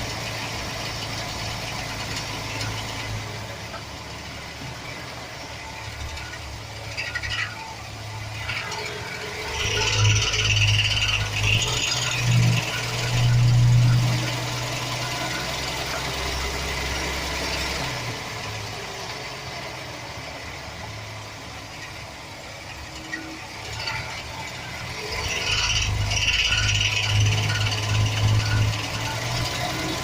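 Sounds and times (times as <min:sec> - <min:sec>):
engine idling with a rattle: 0:00.0 - 0:30.0.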